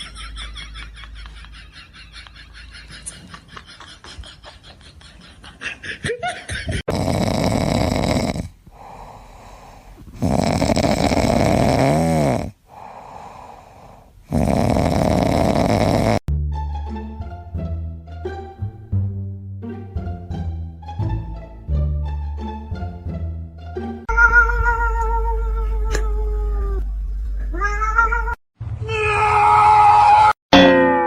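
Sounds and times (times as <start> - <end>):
loud noisy snoring: 6.9 - 16.3.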